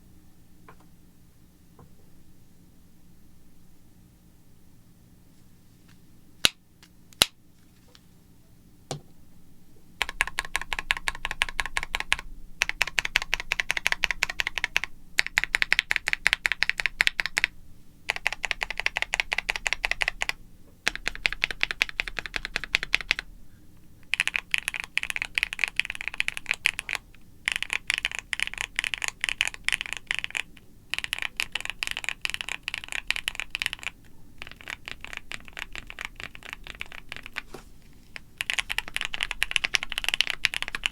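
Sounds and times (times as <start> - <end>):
rapid dense clicking: 38.1 - 40.9.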